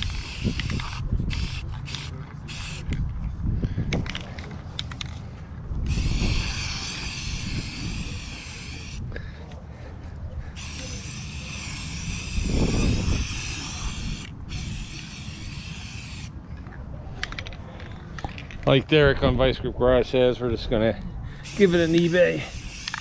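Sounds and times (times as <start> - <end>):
wind rumble on microphone: 0.0 - 1.8, 2.8 - 4.4, 5.5 - 8.4, 12.0 - 14.9
spray paint can hissing: 0.0 - 2.9, 5.9 - 9.0, 10.6 - 16.3, 21.4 - 23.0.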